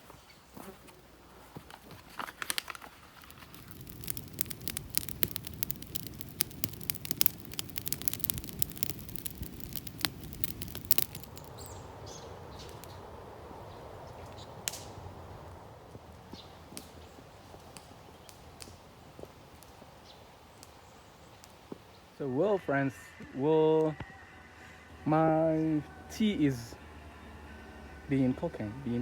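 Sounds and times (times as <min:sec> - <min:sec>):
campfire crackling and popping: 0:02.0 - 0:22.2
low rush of burning: 0:02.7 - 0:22.2.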